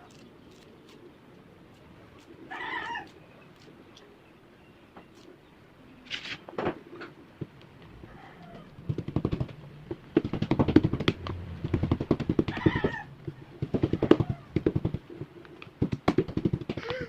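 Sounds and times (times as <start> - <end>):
young child crying: 16.8 - 17.0.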